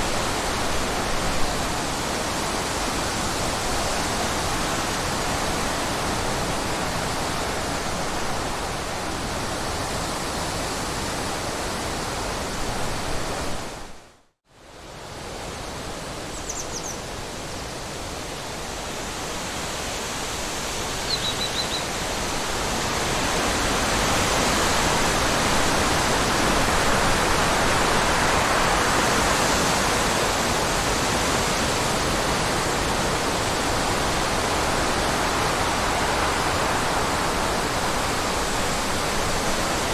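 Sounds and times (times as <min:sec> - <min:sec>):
rushing water: 0:00.0 - 0:39.9
faint high chirps: 0:21.1 - 0:21.9.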